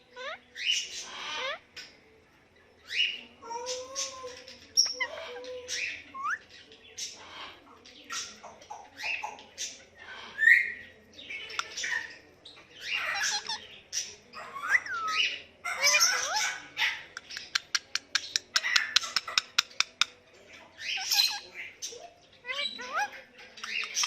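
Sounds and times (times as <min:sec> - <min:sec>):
parakeet chirping and squawking: 0:00.2 - 0:01.6, 0:12.8 - 0:17.6, 0:20.8 - 0:21.5, 0:22.4 - 0:24.0.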